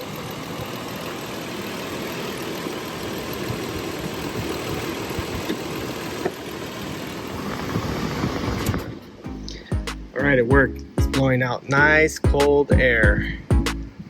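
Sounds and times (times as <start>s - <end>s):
car engine idling: 0.0s - 7.7s, 9.0s - 10.9s.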